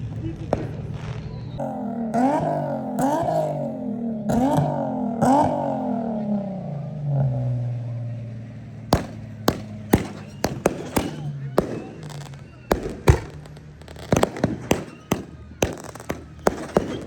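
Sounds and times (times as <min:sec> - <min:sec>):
firework pops and crackles: 0:00.0 - 0:01.6, 0:08.9 - 0:17.0
rising and falling wails: 0:01.6 - 0:17.0.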